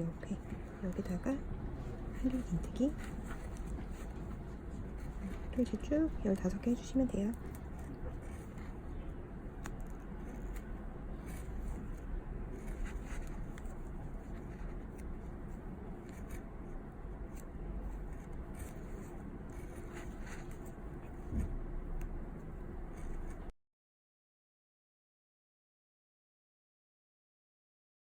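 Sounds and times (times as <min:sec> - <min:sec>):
steady low hum: 0:00.0 - 0:23.5
crochet hook rubbing yarn: 0:02.1 - 0:21.2.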